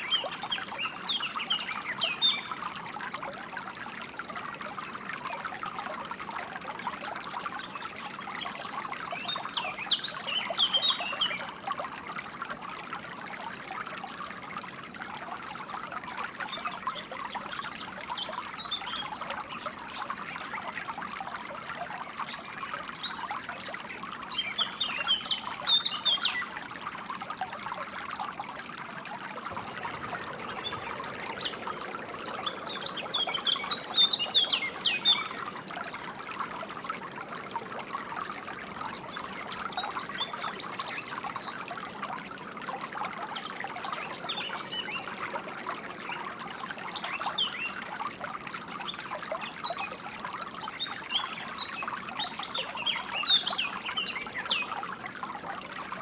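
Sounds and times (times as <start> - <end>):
songbirds chirping: 0.0 - 2.8, 7.2 - 11.6, 29.1 - 41.9
water trickling: 0.0 - 56.0.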